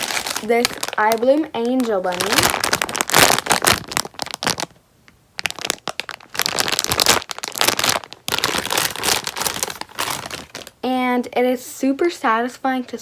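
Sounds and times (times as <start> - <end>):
plastic packaging crinkling: 0.0 - 4.8, 5.4 - 10.8.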